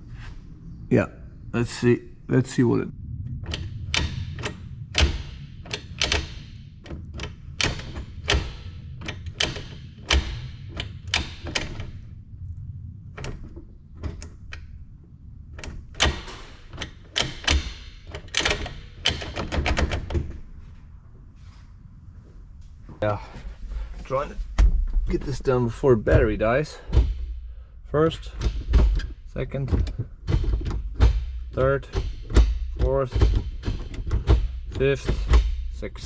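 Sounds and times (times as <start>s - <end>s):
low steady hum: 0.0s - 36.0s
shifter clicks and clunks: 23.9s - 36.0s.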